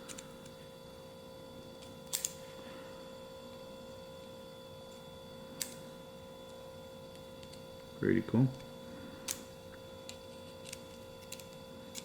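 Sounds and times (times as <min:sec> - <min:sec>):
faint electrical hum: 0:00.0 - 0:12.0.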